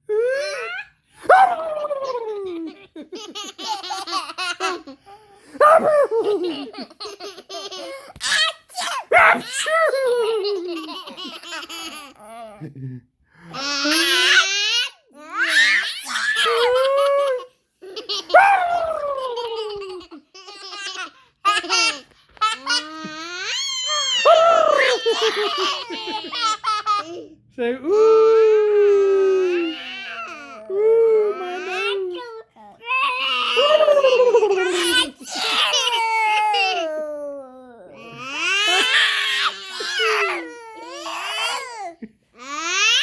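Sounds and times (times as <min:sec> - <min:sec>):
toddler laughing and giggling: 0:01.6 - 0:12.8, 0:15.3 - 0:27.4, 0:33.4 - 0:37.3, 0:37.9 - 0:43.0
toddler squealing: 0:22.6 - 0:26.4, 0:38.0 - 0:41.7.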